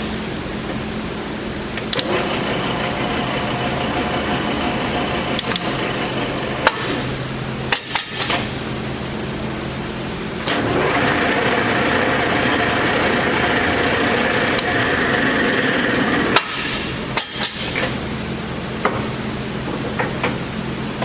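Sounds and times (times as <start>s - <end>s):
lathe motor hum: 2.0s - 7.6s, 9.7s - 16.6s
rushing gear noise: 10.5s - 16.4s.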